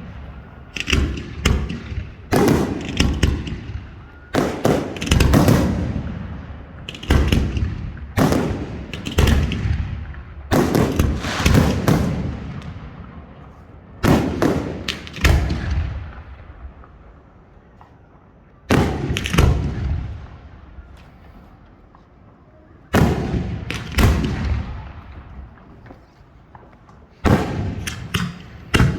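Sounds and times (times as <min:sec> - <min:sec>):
fireworks booming with echo: 0:00.0 - 0:17.8, 0:18.6 - 0:21.5, 0:22.9 - 0:28.9.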